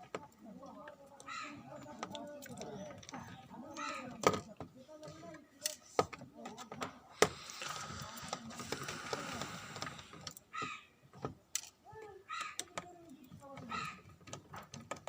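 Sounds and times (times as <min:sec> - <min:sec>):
clicks and taps of tools: 0:03.8 - 0:07.4, 0:08.3 - 0:15.0
scraping rustle: 0:07.4 - 0:10.2.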